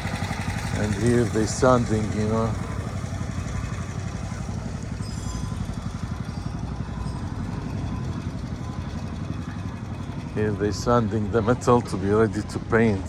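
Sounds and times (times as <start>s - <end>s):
motor running: 0.0s - 13.0s.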